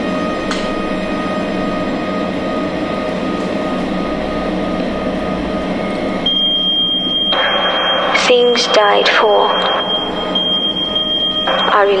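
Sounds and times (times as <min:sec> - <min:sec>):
dense droning hum: 0:00.0 - 0:12.0
high steady tone: 0:00.0 - 0:12.0.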